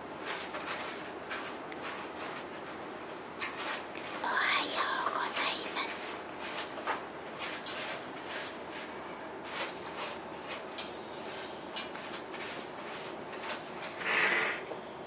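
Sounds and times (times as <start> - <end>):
pet snoring: 14.0 - 14.9.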